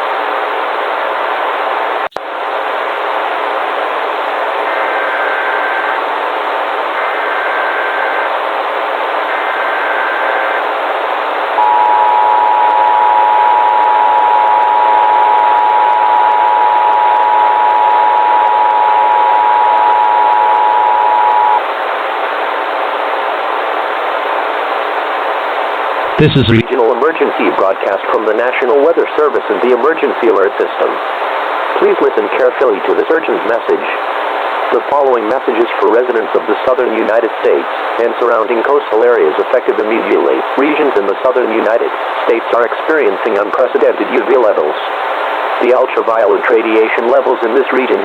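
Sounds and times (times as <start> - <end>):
static hiss: 0.0 - 48.0
two-tone attention signal: 11.6 - 21.6.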